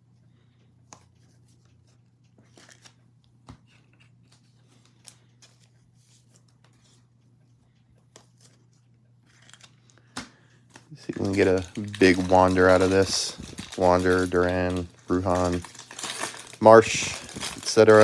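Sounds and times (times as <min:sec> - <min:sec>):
trading cards ticking and rustling: 0:09.3 - 0:18.0.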